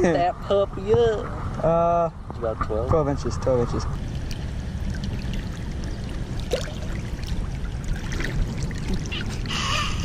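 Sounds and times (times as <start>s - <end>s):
creek water running: 4.0s - 10.0s
faint water trickle: 4.0s - 10.0s.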